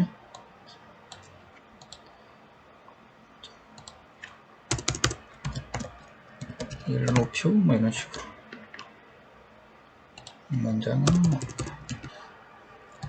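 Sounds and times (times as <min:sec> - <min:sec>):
keyboard typing: 0:01.1 - 0:02.1, 0:03.8 - 0:07.4, 0:10.2 - 0:10.4, 0:11.0 - 0:12.2
computer mouse clicks: 0:03.4 - 0:07.3, 0:10.2 - 0:10.4.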